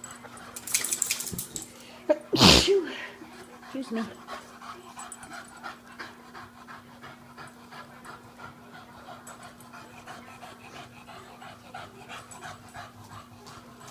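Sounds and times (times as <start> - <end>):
dog panting: 3.2 - 13.9.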